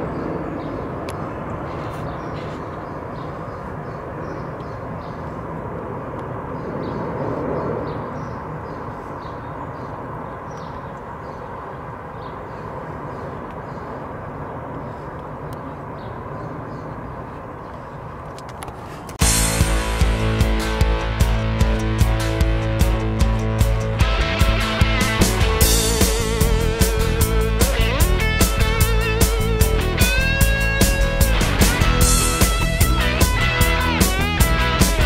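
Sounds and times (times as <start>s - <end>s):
jet engine roar overhead: 0.0s - 19.3s
guitar music: 19.2s - 35.0s.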